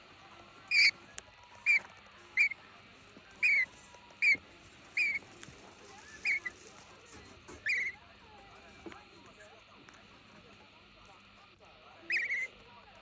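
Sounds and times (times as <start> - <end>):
budgerigar chirping: 0.7 - 1.0, 1.6 - 2.6, 3.4 - 5.3, 6.0 - 6.6, 7.6 - 8.0, 12.1 - 12.5.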